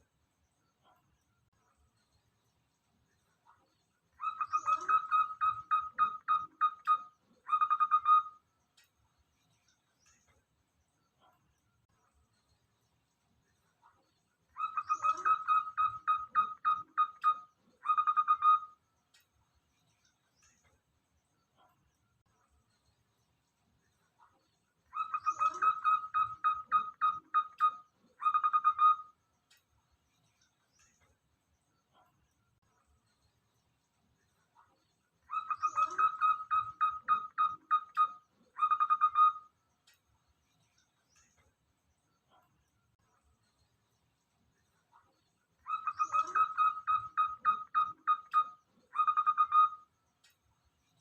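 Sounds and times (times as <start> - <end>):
dove cooing: 4.2 - 6.9, 25.0 - 29.0, 35.3 - 37.9, 45.7 - 48.2.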